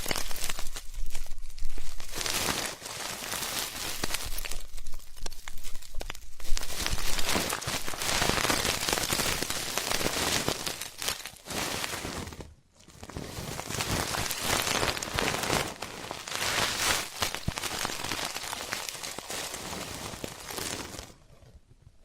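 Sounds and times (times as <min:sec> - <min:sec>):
crackly scratching at microphone: 0:00.0 - 0:22.0.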